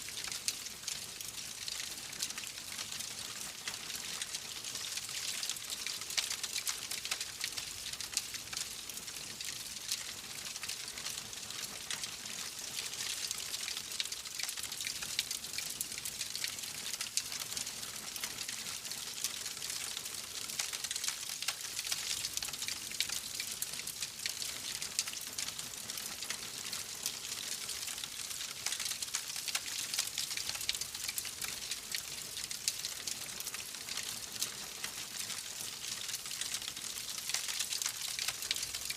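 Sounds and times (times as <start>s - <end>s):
fireplace fire crackling: 35.9s - 38.9s.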